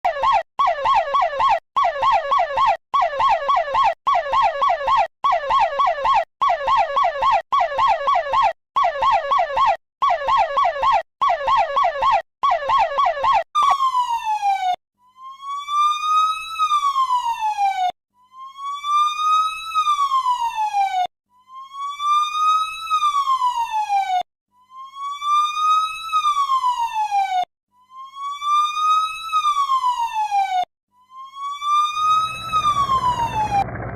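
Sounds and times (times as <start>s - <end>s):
electronic emergency siren: 0.0s - 33.9s.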